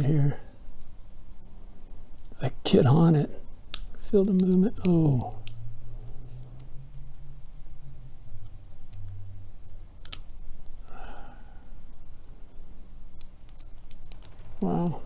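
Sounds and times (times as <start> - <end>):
lock pick metallic clicks: 10.0 - 10.6
faint breath or murmur: 10.8 - 11.8.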